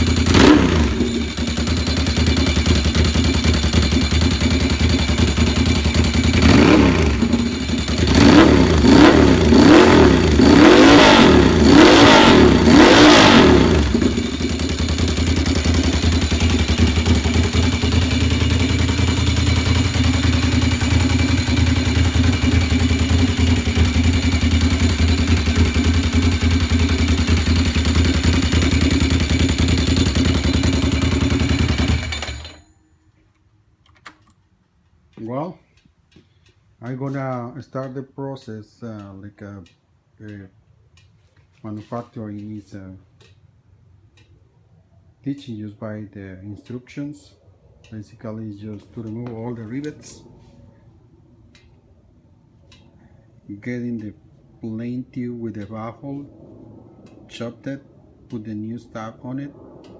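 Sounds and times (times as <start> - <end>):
motorcycle engine revving and idling: 0.0 - 32.6.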